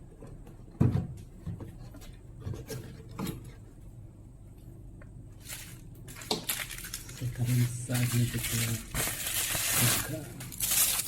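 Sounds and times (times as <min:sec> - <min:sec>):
packaging rustling: 0:05.4 - 0:11.0.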